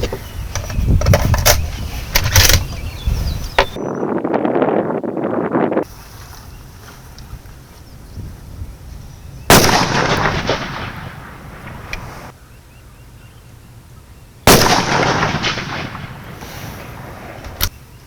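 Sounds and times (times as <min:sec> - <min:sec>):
rifle shots with echo: 0:09.5 - 0:12.1, 0:14.5 - 0:17.4.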